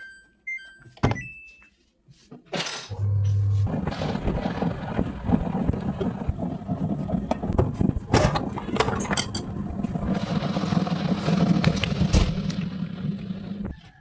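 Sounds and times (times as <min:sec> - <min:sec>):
washing machine motor hum: 0:02.9 - 0:13.9.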